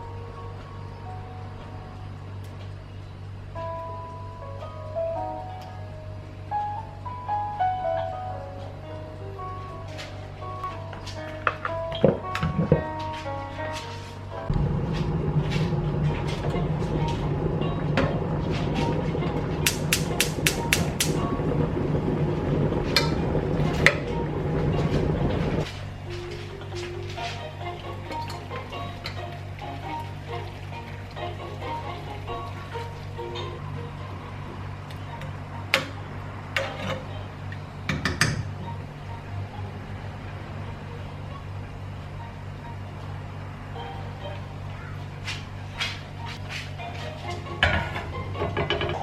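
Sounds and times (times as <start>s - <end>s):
steady low hum: 0.0s - 49.0s
kitchen utensils and dishes clinking: 22.9s - 34.0s, 35.1s - 37.3s, 45.2s - 49.0s.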